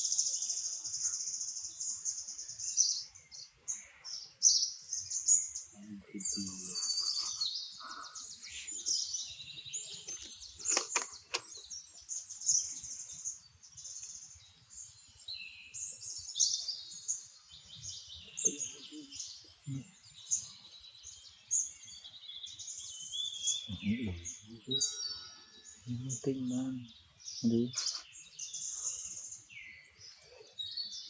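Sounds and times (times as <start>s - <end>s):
birds chirping and trilling: 0.0s - 31.0s
sharp clicks: 10.0s - 11.6s.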